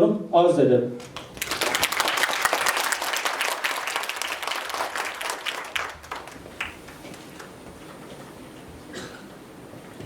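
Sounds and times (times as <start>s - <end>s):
audience applauding: 1.0s - 7.7s.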